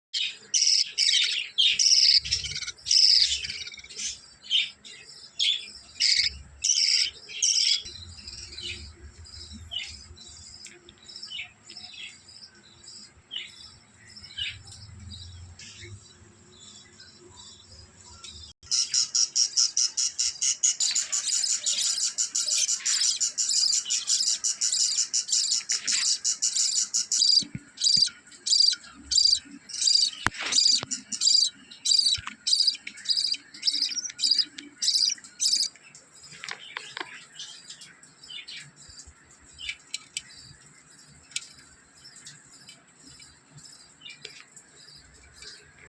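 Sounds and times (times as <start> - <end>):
budgerigars chirping: 0.2 - 4.8, 5.4 - 9.0, 18.6 - 35.8.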